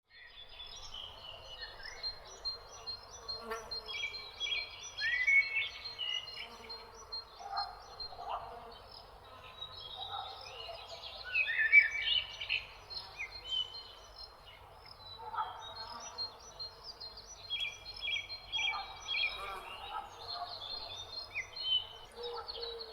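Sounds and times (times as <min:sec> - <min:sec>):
birds singing and chirping: 0:00.2 - 0:22.9.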